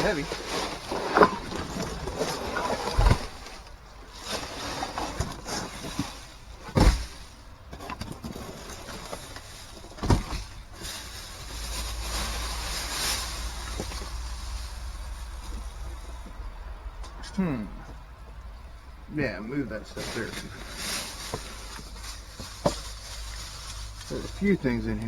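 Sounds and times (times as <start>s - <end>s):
heavy thumps in dumpster: 0.0s - 3.7s, 6.7s - 7.3s
trash rustling: 0.0s - 25.0s.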